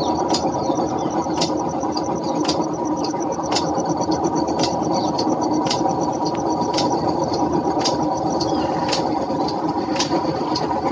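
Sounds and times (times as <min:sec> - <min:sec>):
steady mechanical drone: 0:00.0 - 0:10.9
sparrow chirps: 0:08.3 - 0:08.8.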